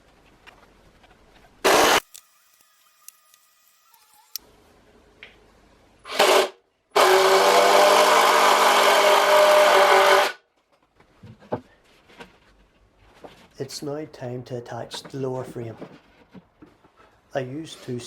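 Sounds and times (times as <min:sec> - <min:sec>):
electric drill running: 0:01.7 - 0:04.4.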